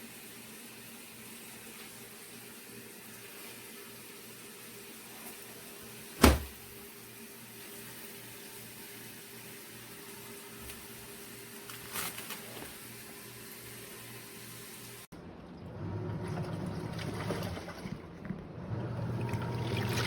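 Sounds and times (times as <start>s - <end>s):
washing machine running: 0.0s - 20.0s
sharp knock: 6.2s - 6.5s.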